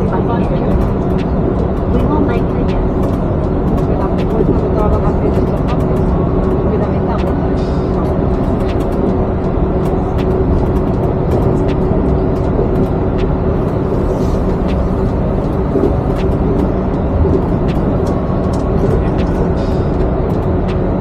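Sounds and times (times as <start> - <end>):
train cabin rumble: 0.0 - 21.0.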